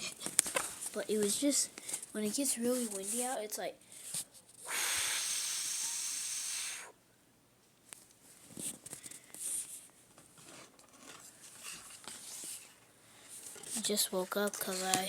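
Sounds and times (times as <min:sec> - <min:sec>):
faint clicks and rustles: 0:00.0 - 0:04.6, 0:07.6 - 0:15.0
person hissing: 0:04.6 - 0:07.0.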